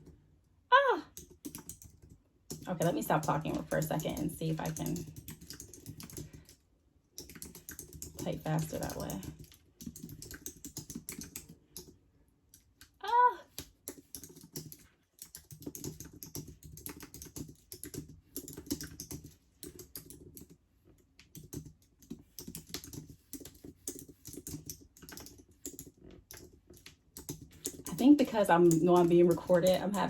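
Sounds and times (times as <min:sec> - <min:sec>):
fast typing on keyboard: 0:01.1 - 0:30.0.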